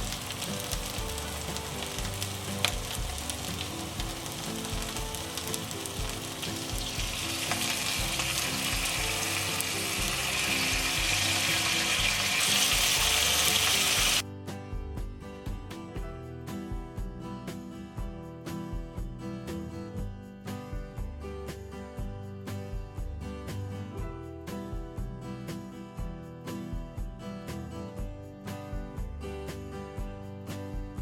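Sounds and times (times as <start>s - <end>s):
food sizzling in oil: 0.0s - 14.2s
background music: 0.0s - 31.0s.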